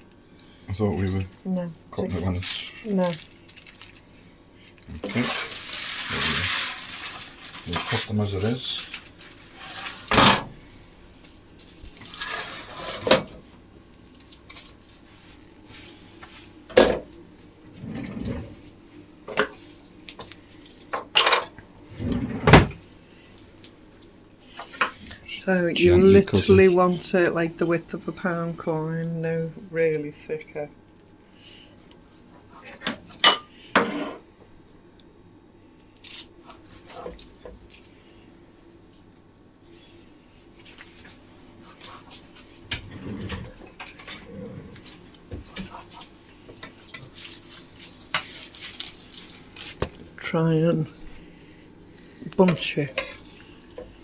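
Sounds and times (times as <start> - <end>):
soft rustling and scraping: 5.0 - 13.5, 14.1 - 16.7, 36.4 - 50.1.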